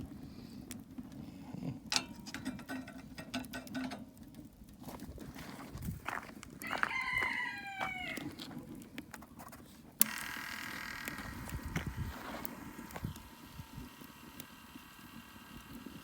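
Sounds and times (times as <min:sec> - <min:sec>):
rooster crowing: 0:06.6 - 0:08.4.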